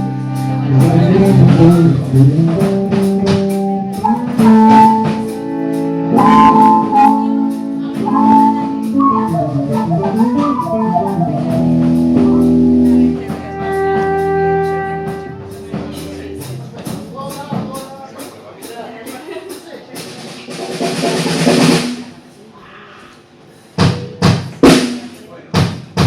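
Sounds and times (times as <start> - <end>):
electric guitar through effects: 0.0 - 16.6.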